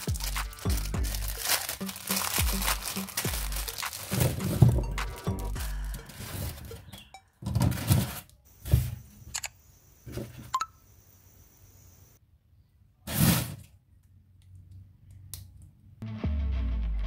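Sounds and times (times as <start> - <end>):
packaging rustling: 0.0 - 7.0.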